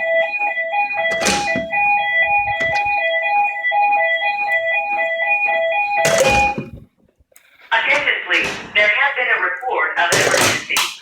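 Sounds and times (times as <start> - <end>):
fire alarm two-tone warble: 0.0 - 6.9.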